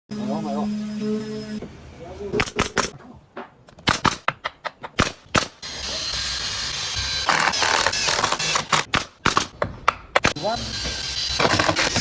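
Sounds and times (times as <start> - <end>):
sharp knocks: 3.7 - 5.5
power tool running: 5.4 - 9.4, 10.2 - 12.0.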